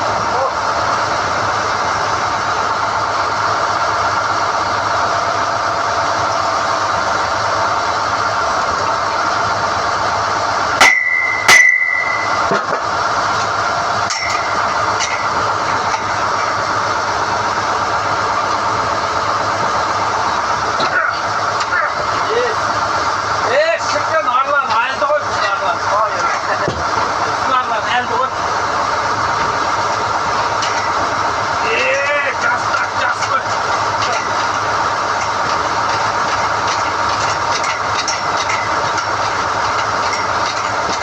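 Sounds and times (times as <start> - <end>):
drilling rig running: 0.0 - 41.0
steel-on-steel clanks: 10.8 - 41.0.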